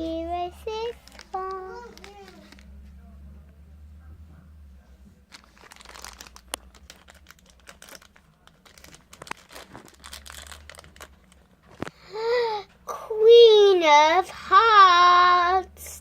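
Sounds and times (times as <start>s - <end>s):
plastic packaging crinkling: 0.8s - 2.8s, 5.3s - 12.0s.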